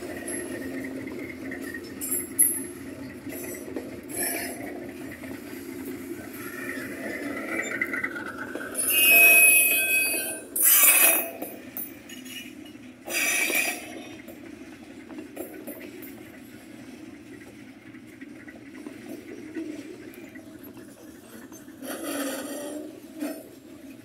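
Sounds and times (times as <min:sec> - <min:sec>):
wagons clanking: 0:00.0 - 0:16.6
freight train rumbling on rails: 0:00.0 - 0:24.0
high wheel squeal: 0:00.1 - 0:14.2, 0:19.6 - 0:23.7.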